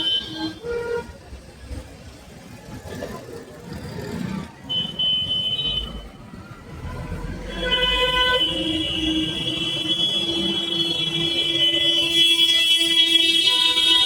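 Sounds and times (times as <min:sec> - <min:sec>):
passing vehicle engine rumble: 0:00.7 - 0:04.8, 0:05.7 - 0:09.6
vehicle horn: 0:07.5 - 0:14.0.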